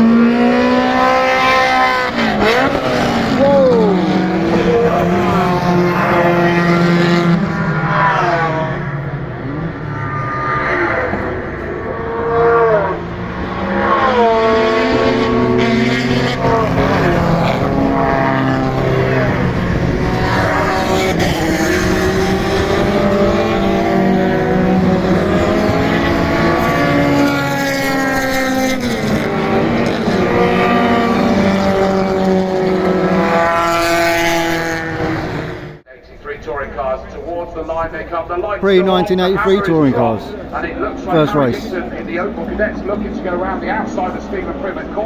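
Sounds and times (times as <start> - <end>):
race car engines passing: 0.0 - 35.8.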